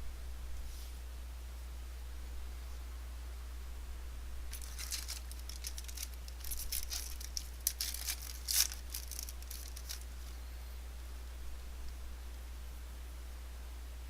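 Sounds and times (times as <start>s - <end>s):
low steady hum: 0.0s - 14.0s
card pack wrapper crinkling and tearing: 4.5s - 10.3s.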